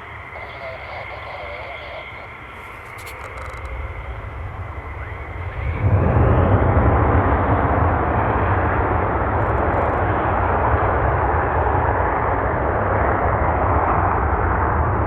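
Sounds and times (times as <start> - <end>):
jet engine roar: 0.0 - 15.0.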